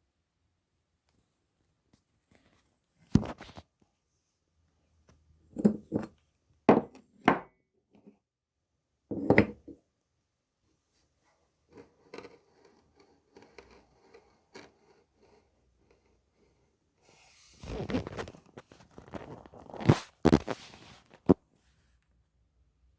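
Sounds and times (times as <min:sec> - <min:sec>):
hard objects knocking: 0:06.7 - 0:07.5, 0:09.1 - 0:09.8
faint clicks and rubbing: 0:11.7 - 0:16.6.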